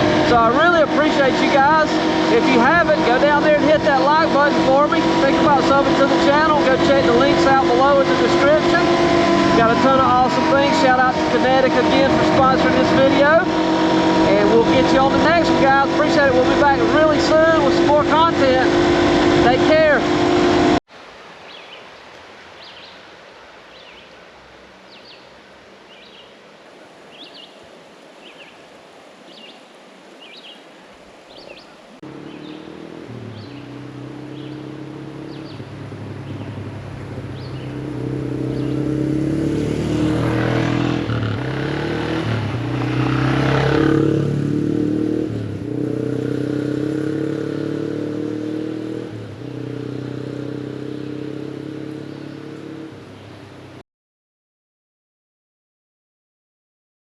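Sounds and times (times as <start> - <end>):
motorcycle engine running: 0.0 - 20.8, 32.0 - 53.8.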